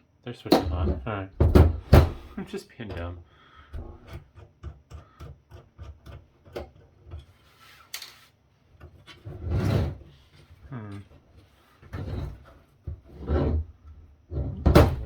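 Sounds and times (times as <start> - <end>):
scraping rubs and knocks: 3.8 - 15.0.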